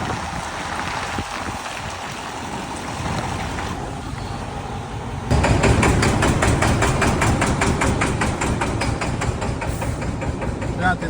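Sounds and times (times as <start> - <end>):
diesel engine knocking: 2.2 - 11.0.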